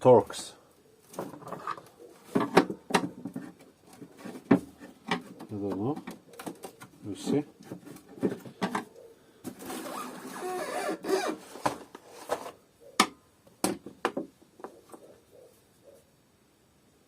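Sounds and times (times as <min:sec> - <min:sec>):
plastic casing scraping and rubbing: 0:01.1 - 0:12.6.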